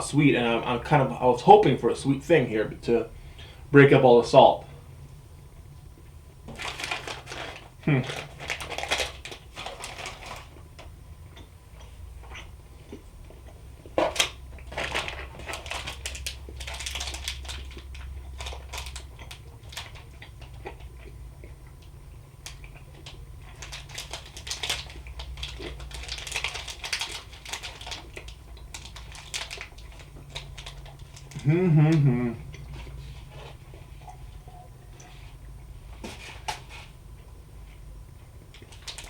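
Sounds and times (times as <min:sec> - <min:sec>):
faint steady hum: 0:00.0 - 0:39.0
plastic packaging crinkling: 0:06.5 - 0:10.6, 0:14.0 - 0:20.2, 0:22.5 - 0:31.4, 0:38.6 - 0:39.0.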